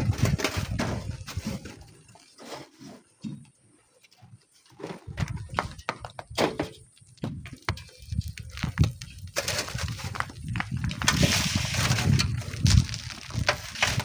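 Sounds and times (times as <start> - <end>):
wind buffeting microphone: 0.0 - 1.8, 5.0 - 6.4, 7.2 - 14.0
sand and stones being dug: 0.0 - 3.3, 6.7 - 14.0.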